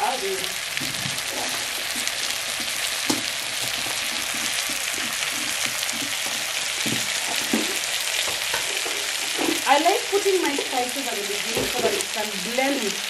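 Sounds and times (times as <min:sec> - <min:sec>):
food sizzling in oil: 0:00.0 - 0:13.0
soft knocks: 0:06.8 - 0:09.0.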